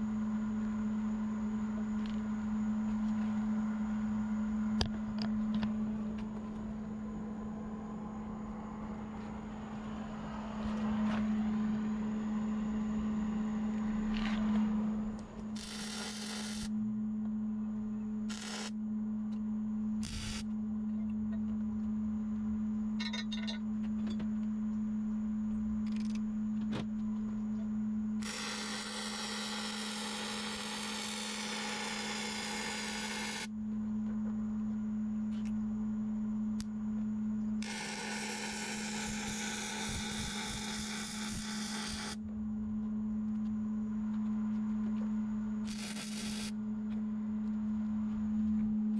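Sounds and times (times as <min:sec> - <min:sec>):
electrical hum: 0:00.0 - 0:48.9
welding crackle: 0:15.6 - 0:16.7, 0:18.3 - 0:18.7, 0:20.0 - 0:20.4, 0:28.2 - 0:33.5, 0:37.6 - 0:42.2, 0:45.7 - 0:46.5.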